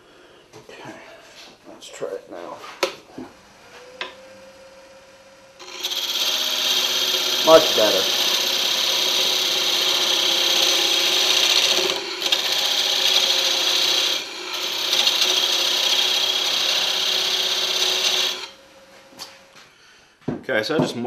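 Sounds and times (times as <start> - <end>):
faint lathe hum: 3.3 - 19.6
lathe tool cutting wood: 5.6 - 18.6.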